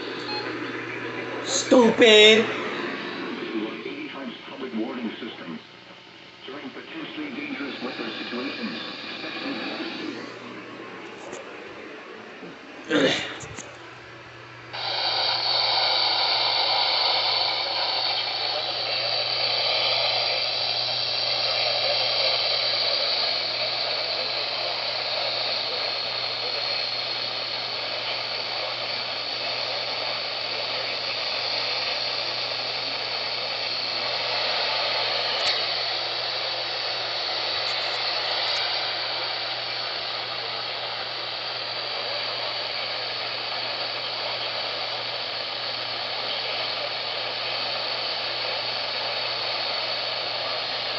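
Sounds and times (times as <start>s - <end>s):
low hum: 0.0s - 4.5s
radio static hiss: 0.0s - 50.9s.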